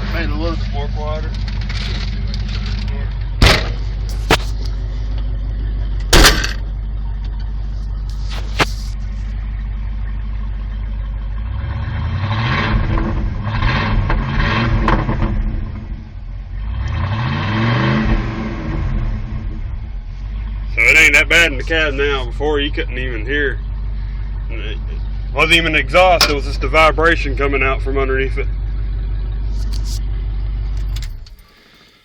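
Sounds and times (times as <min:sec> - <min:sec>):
engine revving: 0:00.0 - 0:05.0, 0:11.3 - 0:31.9
truck engine idling: 0:00.0 - 0:32.0
sharp knocks: 0:03.4 - 0:04.7, 0:06.1 - 0:06.7.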